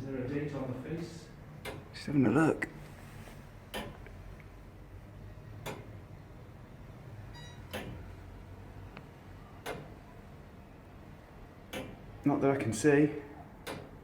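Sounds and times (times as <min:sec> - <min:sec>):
tower clock ticking: 0:01.5 - 0:02.1, 0:03.7 - 0:04.2, 0:05.6 - 0:06.1, 0:07.6 - 0:08.1, 0:09.6 - 0:10.0, 0:11.6 - 0:12.9, 0:13.6 - 0:14.0.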